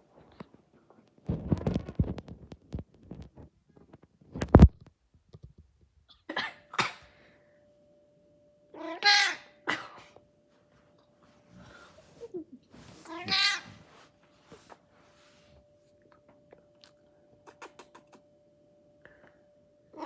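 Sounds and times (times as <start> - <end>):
faint steady hum: 0.0 - 20.0
cat meowing: 13.1 - 13.8.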